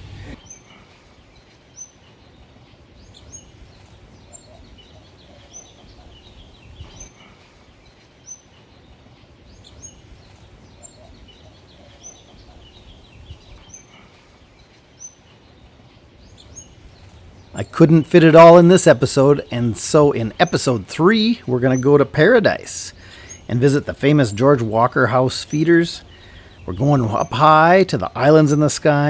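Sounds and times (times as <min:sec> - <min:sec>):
birds chirping: 0:00.0 - 0:29.0
soft bird twittering: 0:00.1 - 0:29.0.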